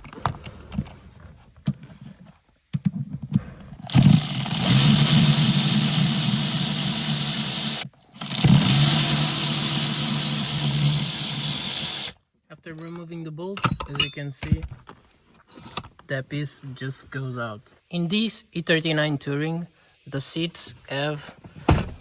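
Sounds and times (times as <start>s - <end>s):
drill bit clicks: 3.8s - 12.2s
drill motor whine: 3.8s - 12.2s.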